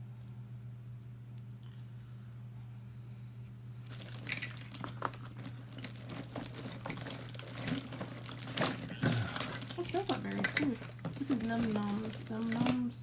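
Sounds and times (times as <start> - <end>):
low steady hum: 0.0 - 13.0
packaging crinkling and rustling: 3.8 - 13.0.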